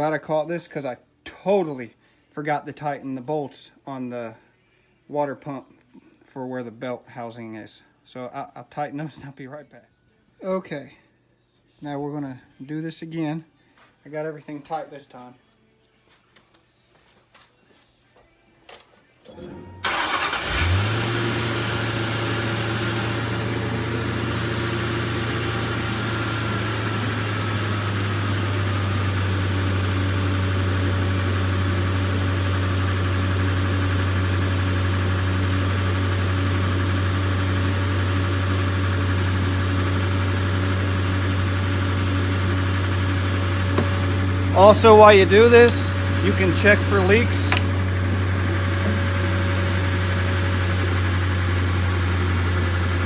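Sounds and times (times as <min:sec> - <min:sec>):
car engine starting and idling: 0:19.3 - 0:53.0.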